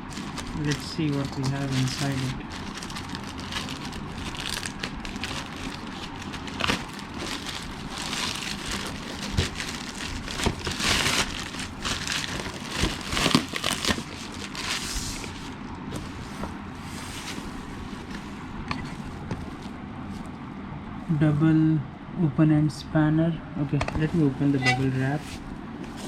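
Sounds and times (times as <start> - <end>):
packaging crinkling and rustling: 0.0 - 18.3.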